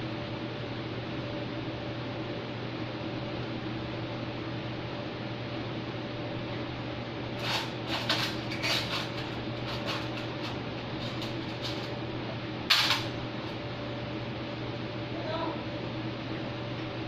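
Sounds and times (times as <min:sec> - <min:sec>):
steady hum: 0:00.0 - 0:17.0
parts scraping and clattering: 0:07.4 - 0:12.0, 0:12.7 - 0:13.1.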